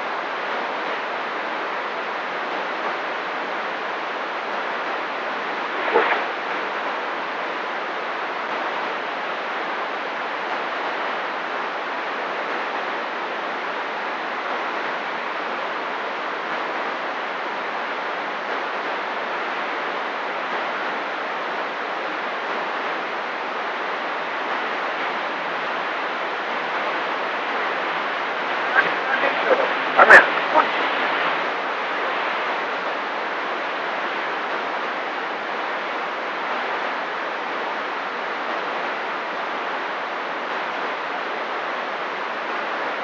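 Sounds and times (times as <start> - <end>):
radio static hiss: 0.0 - 10.0, 23.0 - 43.0.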